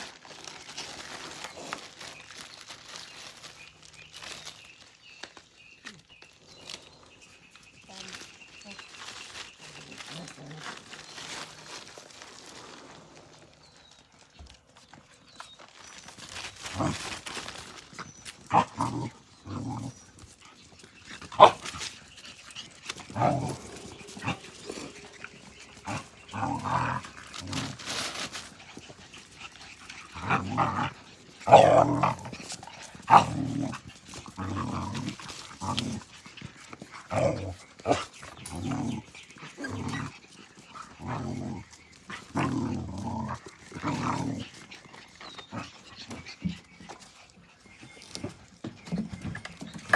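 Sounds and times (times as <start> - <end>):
puppies yipping and growling: 15.6 - 49.9.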